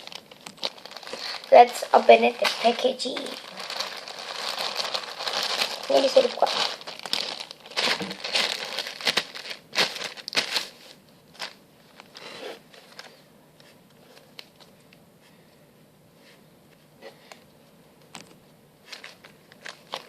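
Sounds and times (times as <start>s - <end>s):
packaging crinkling and rustling: 0.0s - 13.2s, 18.9s - 20.0s.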